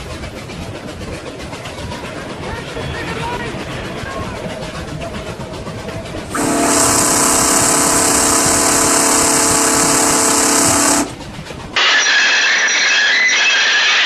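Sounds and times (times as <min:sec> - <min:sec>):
rumble of running train: 0:00.0 - 0:14.0
train horn blast: 0:06.3 - 0:11.2
high screech: 0:11.8 - 0:14.0.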